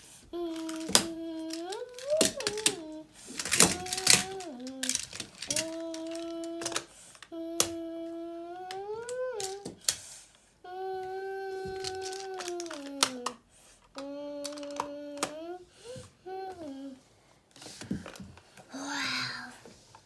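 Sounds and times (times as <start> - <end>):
child humming: 0.3 - 9.8, 10.6 - 13.4, 14.0 - 17.1, 18.7 - 19.6
plastic building tiles clicking: 0.4 - 7.8, 8.6 - 10.0, 11.6 - 15.5.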